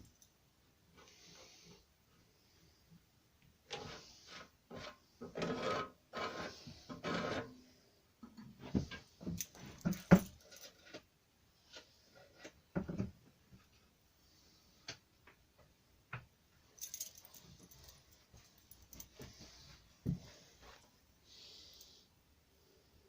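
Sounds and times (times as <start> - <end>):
filler scraping on metal: 3.7 - 7.6.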